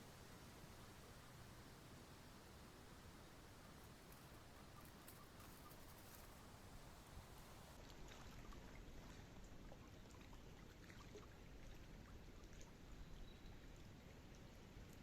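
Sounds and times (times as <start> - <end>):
faint ticks and clicks: 3.6 - 6.5.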